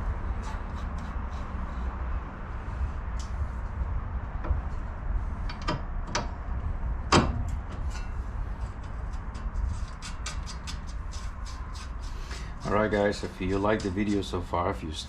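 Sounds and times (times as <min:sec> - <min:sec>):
steady low hum: 0:00.0 - 0:15.0
sharp clicks and knocks: 0:05.5 - 0:06.4, 0:07.1 - 0:12.4.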